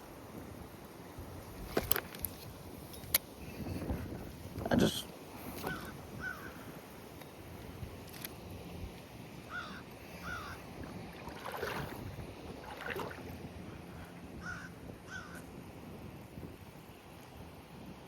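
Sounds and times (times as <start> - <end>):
steady wind: 0.0 - 18.0
crow cawing: 5.7 - 6.6, 9.5 - 10.6, 14.4 - 15.4.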